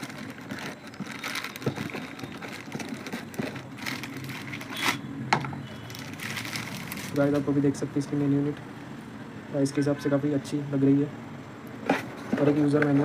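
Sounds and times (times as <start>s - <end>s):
packaging crinkling and rustling: 0.0s - 5.0s, 5.8s - 7.5s.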